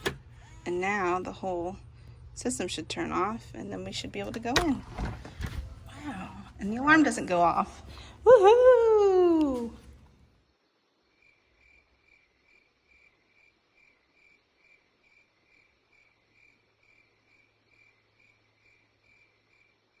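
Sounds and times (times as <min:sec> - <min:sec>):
cricket chirping: 0:10.7 - 0:20.0.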